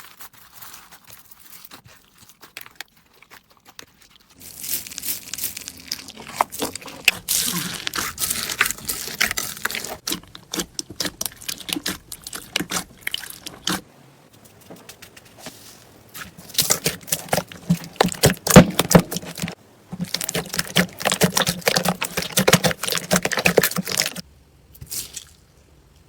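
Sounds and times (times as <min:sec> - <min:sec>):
slime crackling and popping: 0:01.7 - 0:13.8, 0:16.5 - 0:24.2.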